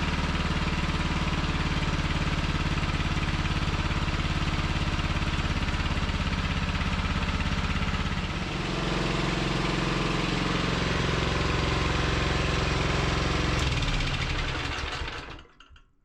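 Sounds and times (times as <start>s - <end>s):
pressure washer engine running: 0.0s - 15.4s.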